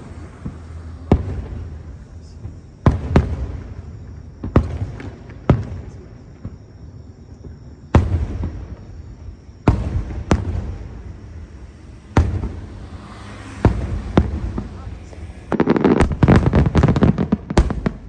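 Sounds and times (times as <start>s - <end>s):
rolling rumble of echo: 0.0s - 6.8s, 7.4s - 18.0s
firework shells bursting: 8.0s - 18.0s.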